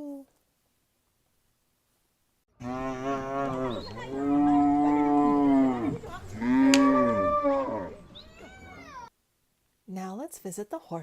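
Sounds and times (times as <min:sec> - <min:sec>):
cow mooing: 0:02.6 - 0:09.0.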